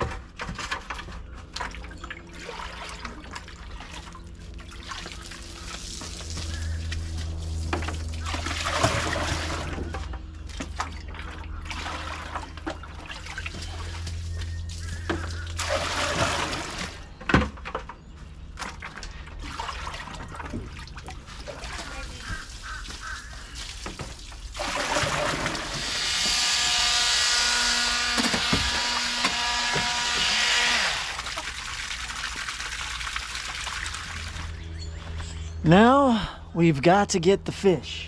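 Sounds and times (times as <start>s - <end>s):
water running and splashing: 0.8s - 17.1s, 18.6s - 26.0s, 28.8s - 34.7s.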